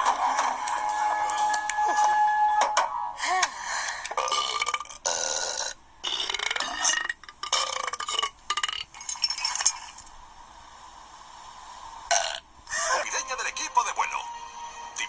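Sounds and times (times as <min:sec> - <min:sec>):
person burping: 0:04.1 - 0:08.9, 0:12.1 - 0:12.4.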